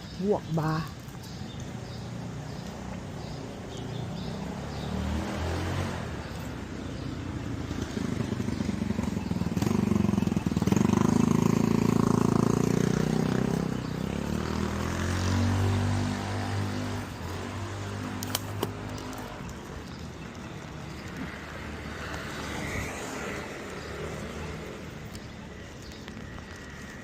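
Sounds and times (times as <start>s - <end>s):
vehicle engine passing: 1.8s - 25.2s.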